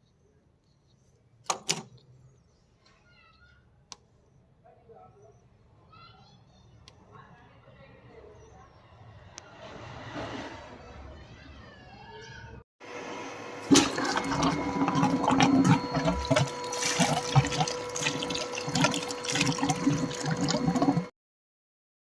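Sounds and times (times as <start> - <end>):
water gushing from pipe: 13.6 - 21.1.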